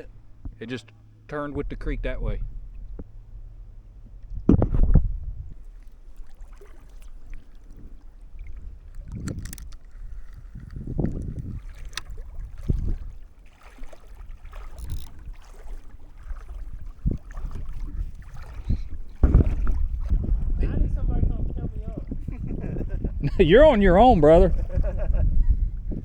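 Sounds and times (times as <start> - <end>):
paddle strokes in water: 0.0 - 20.6
wind rumble on microphone: 0.0 - 26.0
knocks against canoe hull: 4.3 - 5.2, 17.0 - 20.5.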